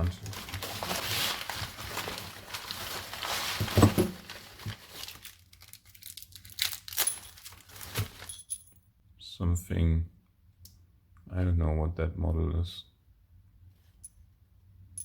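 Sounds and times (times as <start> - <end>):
packing material crinkling: 0.0 - 8.5.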